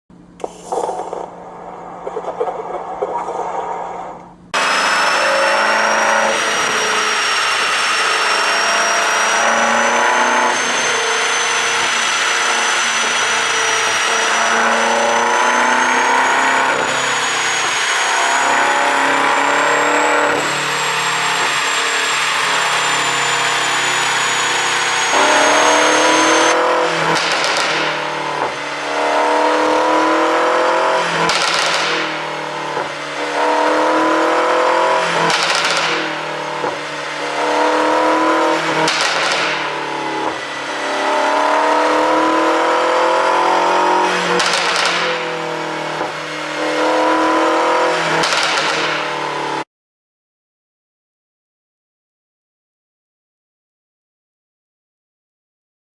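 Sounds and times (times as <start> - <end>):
car engine accelerating: 0.2 - 49.6
exhaust cracks: 31.2 - 32.3, 35.1 - 37.0, 38.5 - 40.8, 44.4 - 45.3.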